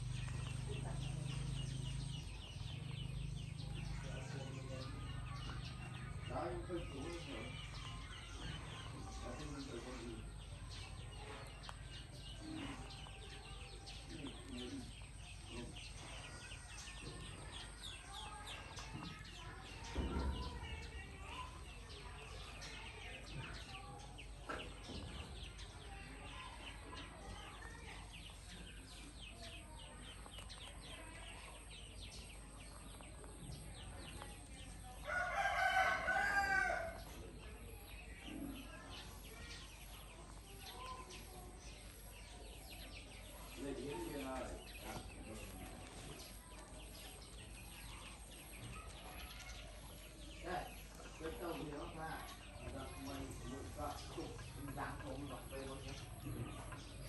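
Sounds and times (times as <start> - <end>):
rooster crowing: 35.1 - 37.0.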